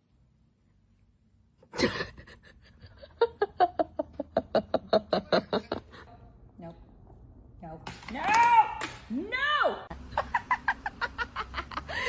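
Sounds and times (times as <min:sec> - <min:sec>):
person laughing hard: 0:01.8 - 0:06.1.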